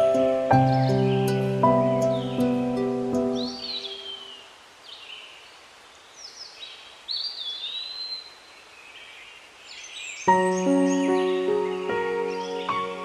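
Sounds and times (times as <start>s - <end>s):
soft music: 0.0s - 4.3s, 10.3s - 13.0s
songbird chirping and whistling: 0.0s - 5.1s, 9.7s - 13.0s.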